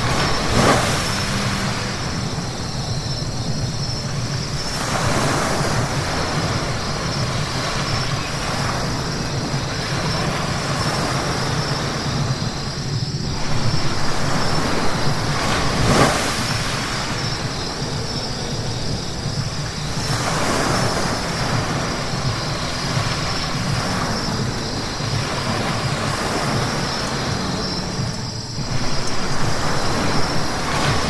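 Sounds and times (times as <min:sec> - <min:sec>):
traffic on wet road: 0:00.0 - 0:31.0.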